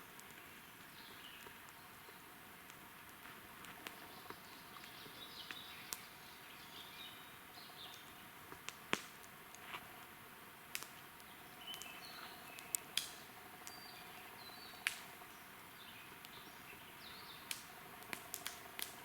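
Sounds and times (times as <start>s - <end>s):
campfire crackling and popping: 0.0s - 19.0s
bird chirping: 11.3s - 12.8s, 13.7s - 17.5s.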